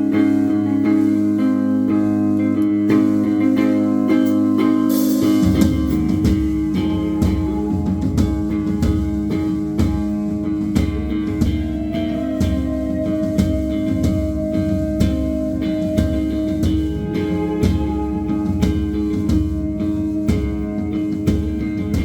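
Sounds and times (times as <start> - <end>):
electric guitar: 0.0 - 22.0
live band playing: 0.0 - 22.0
steady drum beat: 2.9 - 22.0
cymbal crash: 4.2 - 15.6.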